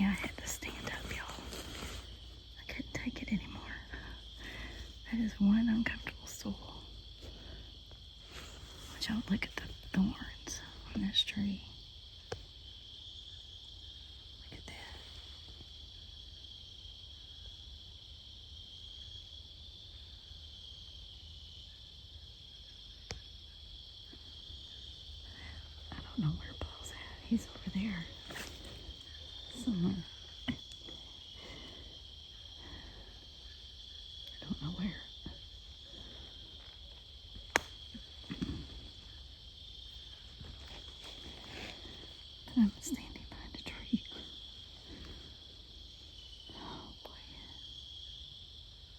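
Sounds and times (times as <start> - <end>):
soft rustle: 0.0 - 2.6, 7.1 - 9.9, 26.9 - 30.2, 38.3 - 43.0
insects chirring: 0.0 - 48.9.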